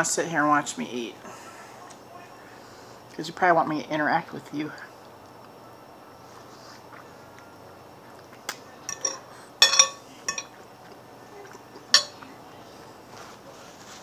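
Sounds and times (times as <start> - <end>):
cutlery clinking against dish: 8.9 - 10.6, 11.9 - 12.3.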